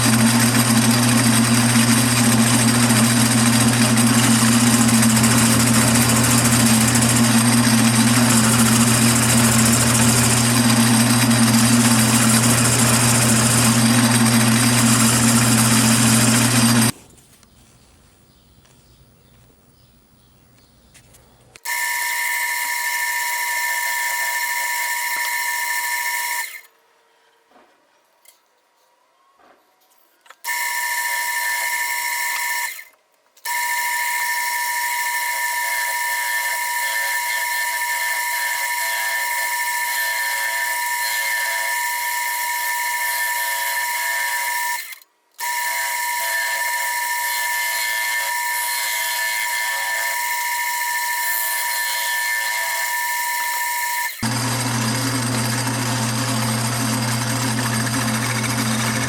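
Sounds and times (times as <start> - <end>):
wood lathe whining: 0.0 - 17.0, 21.7 - 26.7, 33.5 - 59.0
rough low machine sound: 1.6 - 17.0.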